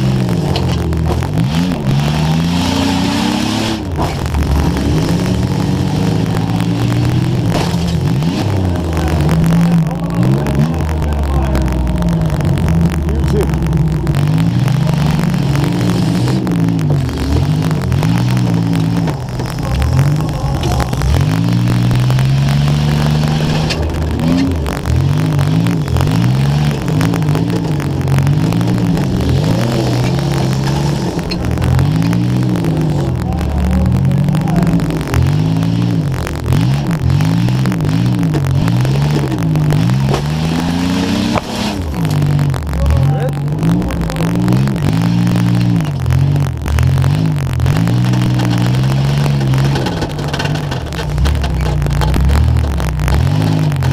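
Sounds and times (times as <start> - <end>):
car engine revving: 0.0 - 53.9
static crackle from microphone: 0.0 - 53.9.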